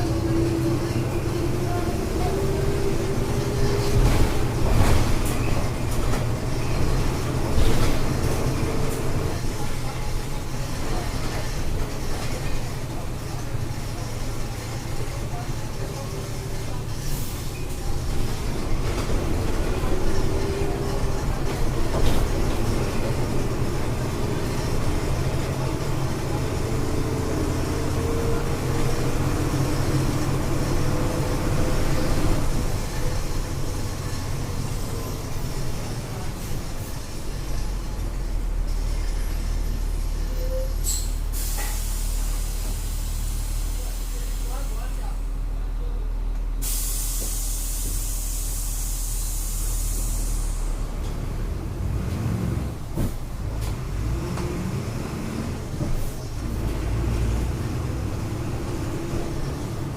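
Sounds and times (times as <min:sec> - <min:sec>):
bus diesel engine droning: 0:00.0 - 0:59.9
air brake hiss: 0:40.8 - 0:44.2, 0:46.6 - 0:50.8.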